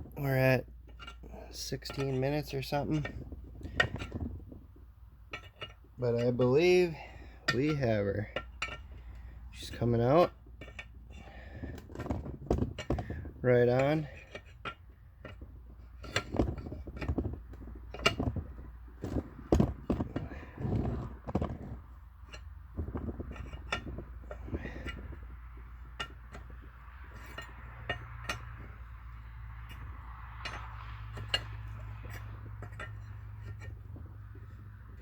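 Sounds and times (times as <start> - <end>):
steady low hum: 0.0 - 35.0
wrench clinking on metal: 5.3 - 9.0, 22.2 - 29.0, 29.6 - 35.0.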